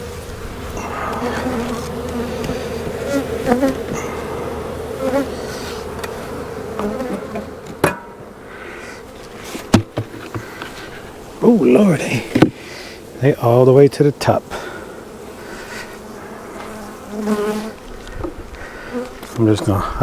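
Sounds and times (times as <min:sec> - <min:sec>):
bees buzzing: 0:00.0 - 0:20.0
sharp knocks: 0:09.7 - 0:10.5.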